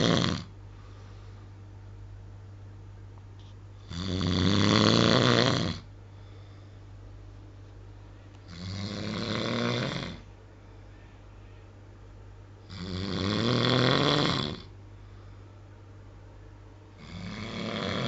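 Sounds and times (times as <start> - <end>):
man snoring loudly: 0.0 - 0.5, 3.8 - 5.9, 8.5 - 10.3, 12.6 - 14.7, 17.0 - 18.0.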